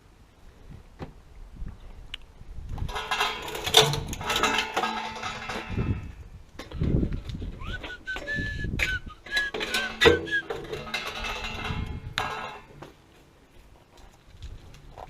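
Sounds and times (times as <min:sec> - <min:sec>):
metal tools clanking: 0:02.9 - 0:06.2, 0:09.2 - 0:12.9
person whistling a tune: 0:07.6 - 0:10.6.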